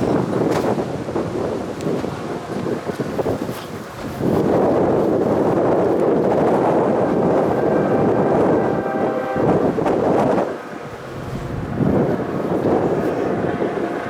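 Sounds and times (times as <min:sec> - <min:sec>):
freight train passing: 0:00.0 - 0:14.0
wind buffeting microphone: 0:00.0 - 0:14.0.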